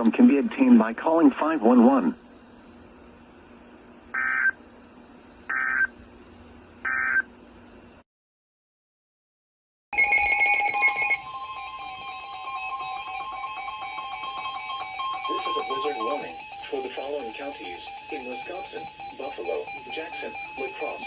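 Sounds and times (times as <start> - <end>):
phone line hum: 4.1 - 4.6, 10.0 - 21.0
data bursts: 13.7 - 21.0
distorted two-tone attention signal: 15.3 - 21.0.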